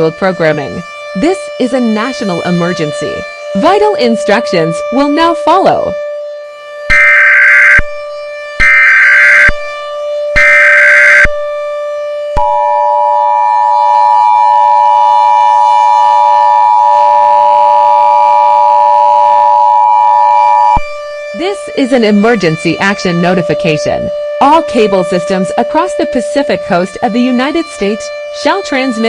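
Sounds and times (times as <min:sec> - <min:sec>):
two-tone attention signal: 0:10.4 - 0:11.3, 0:12.4 - 0:20.9.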